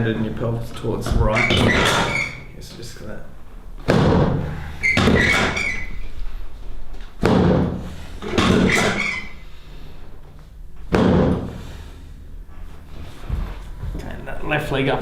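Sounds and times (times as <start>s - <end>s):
heavy thumps on treatment table: 3.8s - 5.7s, 7.2s - 9.0s, 10.8s - 11.7s.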